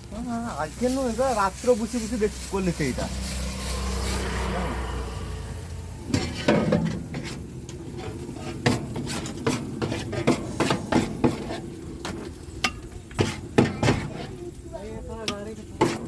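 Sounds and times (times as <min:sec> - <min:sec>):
metal utensils clinking and scraping: 0:06.0 - 0:16.0.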